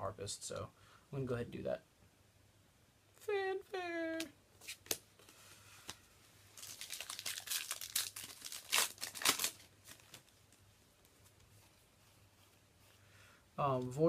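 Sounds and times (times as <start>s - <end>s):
foil wrapper crinkling and tearing: 6.5s - 10.4s.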